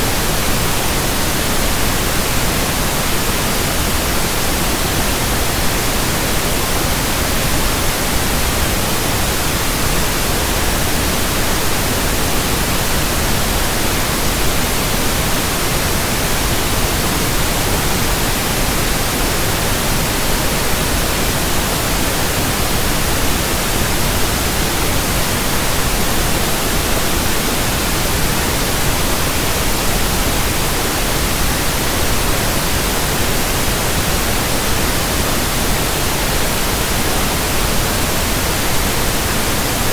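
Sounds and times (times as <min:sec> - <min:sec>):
steady pink noise hiss: 0:00.0 - 0:39.9.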